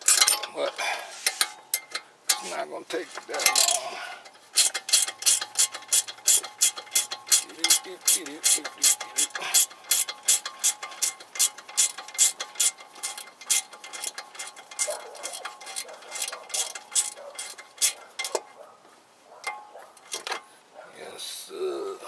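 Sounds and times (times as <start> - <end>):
ratchet wrench clicking: 0.0 - 0.5, 3.4 - 18.4.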